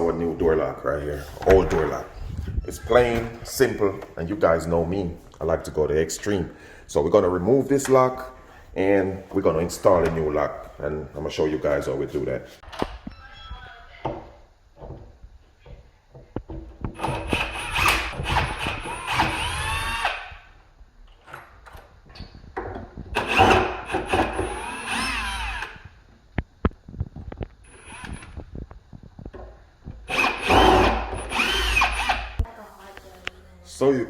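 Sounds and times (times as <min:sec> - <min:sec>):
power drill motor whine: 0:17.0 - 0:20.4, 0:23.2 - 0:25.9, 0:27.7 - 0:28.4, 0:30.1 - 0:32.4.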